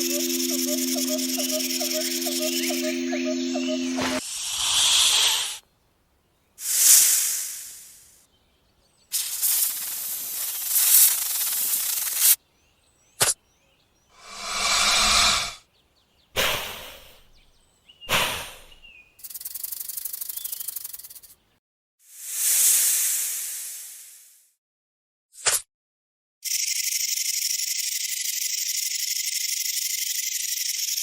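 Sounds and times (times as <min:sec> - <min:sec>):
hissing: 0:14.2 - 0:15.6.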